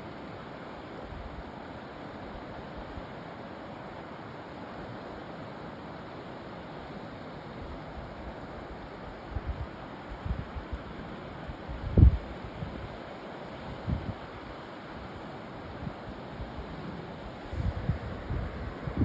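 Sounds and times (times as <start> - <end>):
stream water rushing: 0.0 - 19.0
wind buffeting microphone: 17.3 - 19.0.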